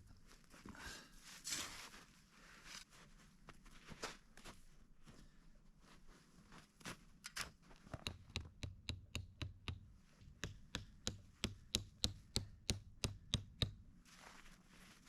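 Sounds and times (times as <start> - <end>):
hand tool striking something hard: 8.0 - 13.8.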